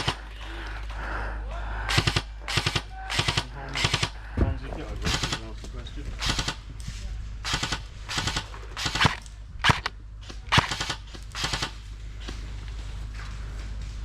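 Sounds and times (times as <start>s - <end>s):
airsoft guns firing bursts: 0.0s - 0.3s, 1.9s - 4.3s, 5.0s - 5.5s, 6.2s - 6.8s, 7.4s - 12.4s.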